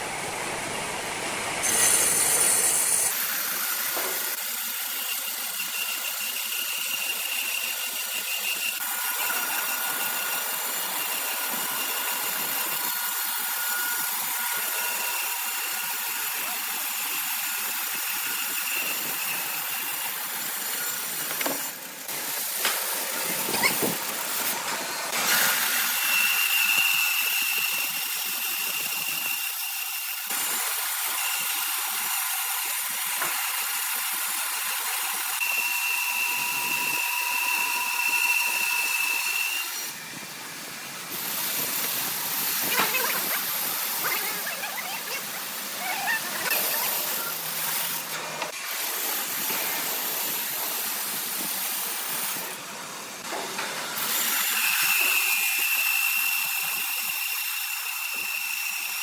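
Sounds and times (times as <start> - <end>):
saw whining through wood: 0.0 - 59.0.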